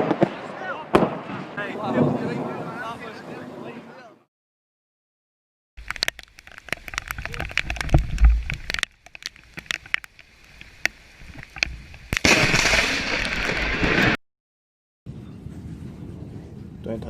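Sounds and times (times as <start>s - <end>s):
deep thunder rumble: 0.0s - 3.9s
thunder cracks: 0.0s - 3.9s.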